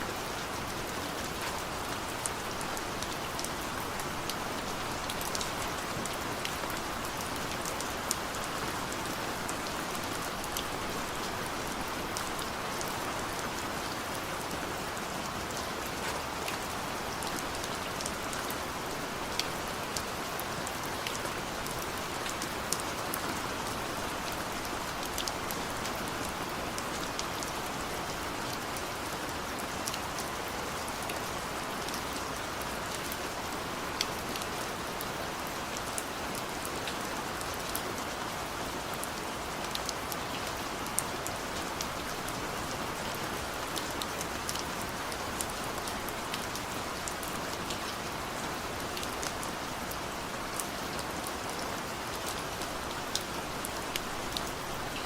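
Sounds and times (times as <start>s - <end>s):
heavy rain: 0.0s - 55.0s.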